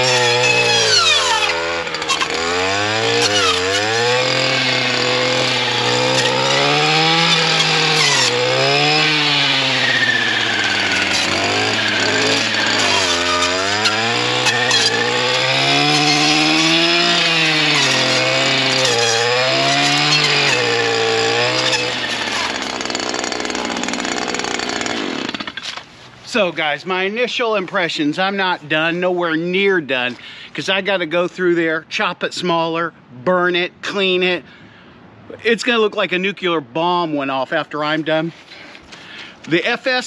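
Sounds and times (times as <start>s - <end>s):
brush cutter engine running: 0.0s - 25.9s.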